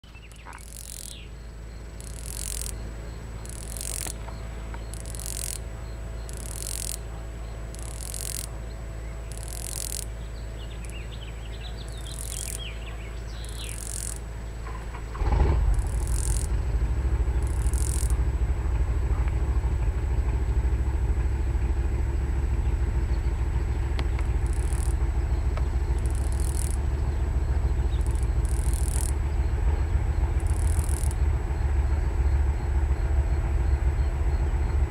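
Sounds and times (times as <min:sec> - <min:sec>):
cicada rasping: 0:00.0 - 0:34.9
loud low rumble: 0:10.1 - 0:34.9.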